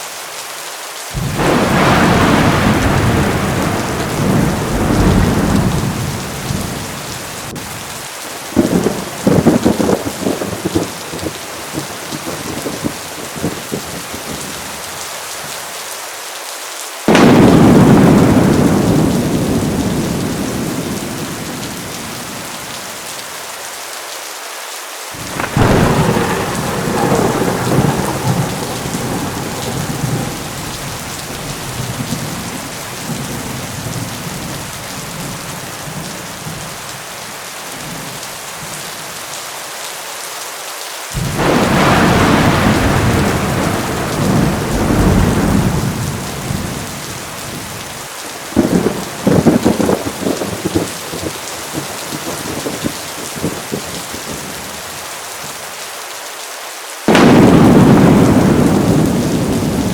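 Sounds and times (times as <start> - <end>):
heavy rain: 0.0 - 59.9
thunder rumbling: 1.2 - 14.7, 17.1 - 23.0, 25.2 - 36.9, 41.2 - 54.7, 57.1 - 59.9.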